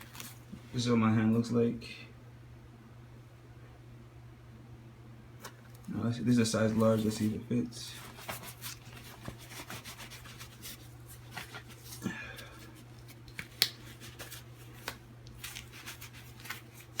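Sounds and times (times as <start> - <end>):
glove rustling and rubbing: 6.5 - 17.0.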